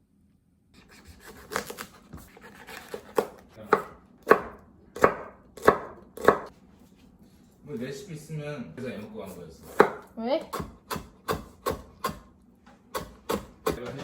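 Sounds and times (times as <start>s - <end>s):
knife chopping on cutting board: 0.8s - 6.5s, 9.6s - 14.0s.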